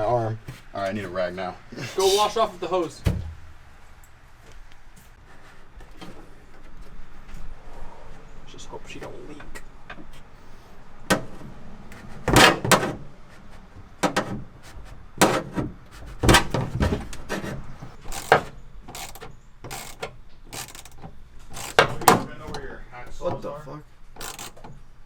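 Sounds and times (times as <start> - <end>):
ratchet clicking: 18.0 - 22.2, 24.2 - 24.8
clanks of tools on metal parts: 18.1 - 22.3, 24.2 - 24.8.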